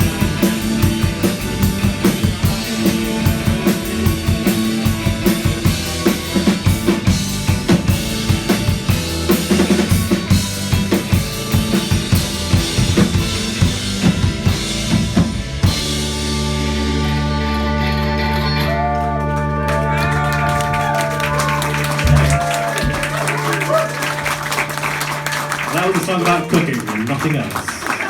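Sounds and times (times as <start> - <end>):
drum kit beat: 0.0 - 16.2, 20.6 - 26.0
live rock band playing: 0.0 - 26.8.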